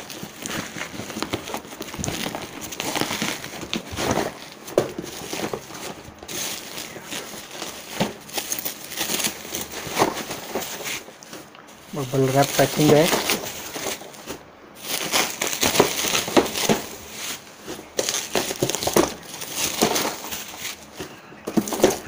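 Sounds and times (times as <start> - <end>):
bubble wrap crinkling: 0.0 - 22.0.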